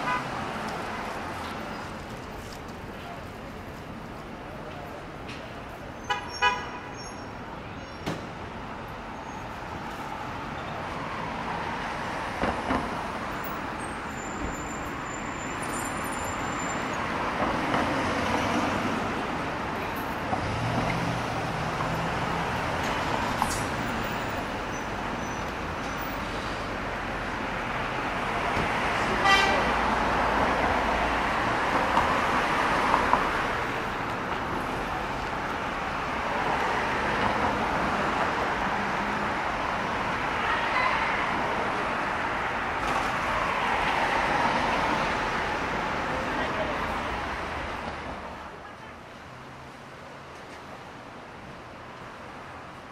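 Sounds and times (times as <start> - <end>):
car horn honking: 0.0 - 0.4, 6.0 - 7.0, 29.2 - 29.7
passing cars and engines: 0.0 - 52.9.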